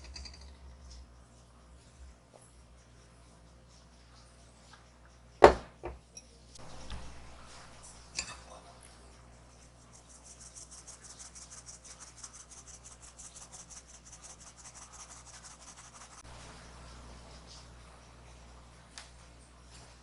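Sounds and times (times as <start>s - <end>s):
utensil scraping mixture in bowl: 9.3s - 16.3s.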